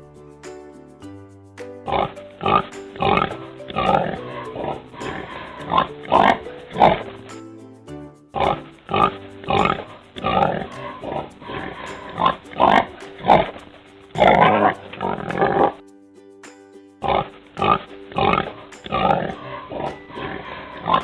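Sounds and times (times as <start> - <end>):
background music with held notes: 0.0 - 21.0.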